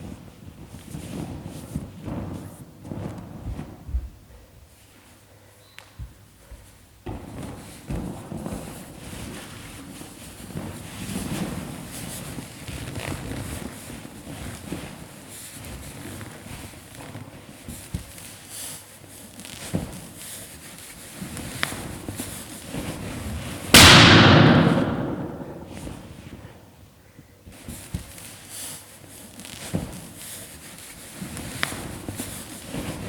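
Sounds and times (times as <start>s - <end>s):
balloon bursting bang: 23.7s - 26.1s.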